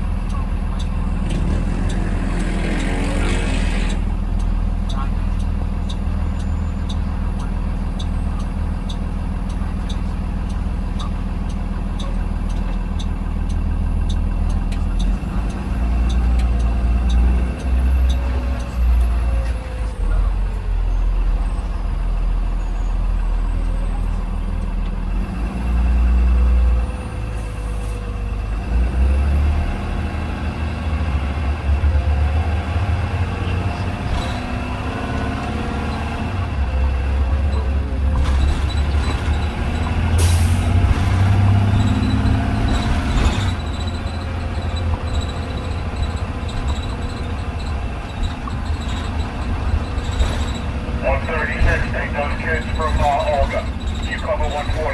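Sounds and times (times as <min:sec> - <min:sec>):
bus engine running: 0:00.0 - 0:54.9
indicator clicker ticking: 0:00.2 - 0:02.0, 0:03.9 - 0:19.0.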